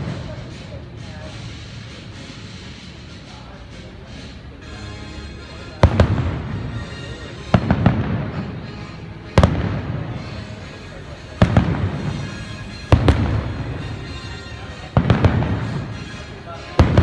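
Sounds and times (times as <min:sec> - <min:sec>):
fireworks bangs: 0:05.8 - 0:06.6, 0:07.5 - 0:17.0
low rumbling echo: 0:07.5 - 0:17.0.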